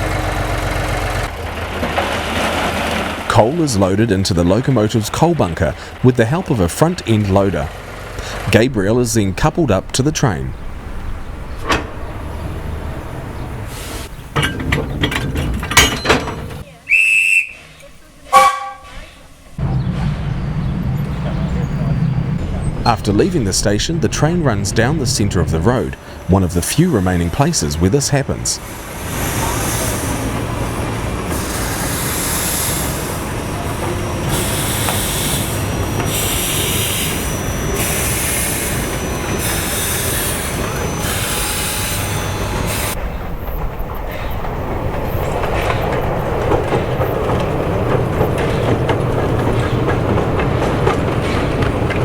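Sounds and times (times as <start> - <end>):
train low rumble: 0.0 - 52.0
steam hissing: 13.7 - 14.3, 25.9 - 43.0
metallic clanks and knocks: 14.3 - 16.6
steam whistle toot: 16.9 - 19.1.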